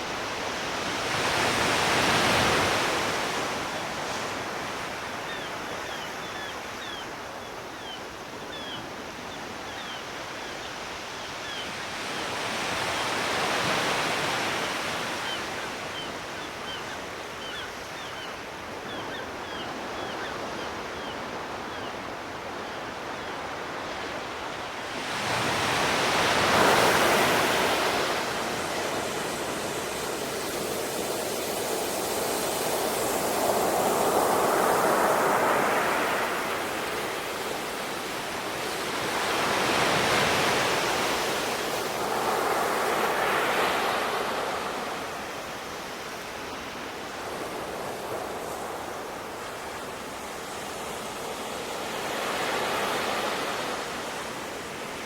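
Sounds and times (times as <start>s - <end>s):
sea waves washing on shore: 24.8s - 55.0s.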